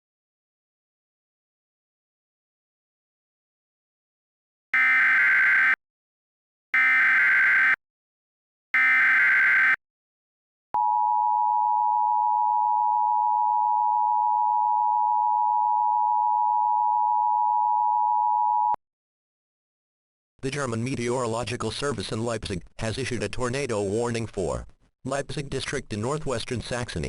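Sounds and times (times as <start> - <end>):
two-tone attention signal: 4.8 - 5.8, 6.8 - 7.8, 8.8 - 9.8
warbling digital data tones: 4.8 - 5.8, 6.8 - 7.8, 8.8 - 9.8.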